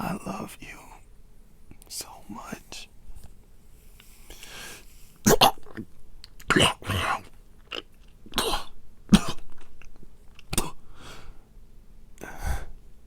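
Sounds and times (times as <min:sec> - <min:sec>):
heavy breaths: 0:03.9 - 0:05.2, 0:12.2 - 0:12.8.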